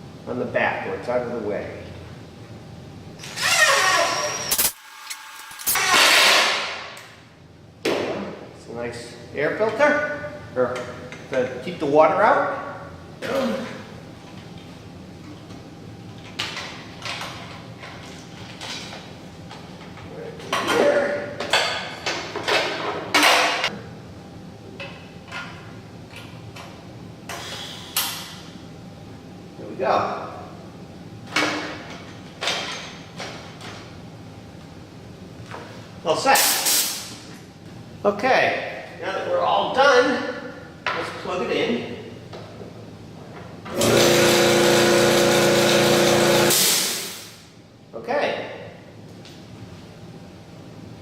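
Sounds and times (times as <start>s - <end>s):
air compressor running: 3.2s - 6.9s, 36.4s - 37.2s, 43.6s - 47.5s
air hiss from valve: 36.4s - 37.1s.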